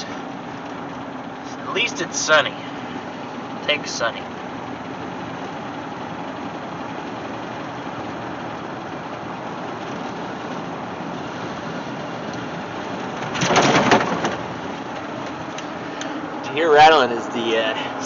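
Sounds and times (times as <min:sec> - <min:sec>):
car engine running: 0:00.0 - 0:18.0
sunroof cover rattling: 0:12.5 - 0:15.5.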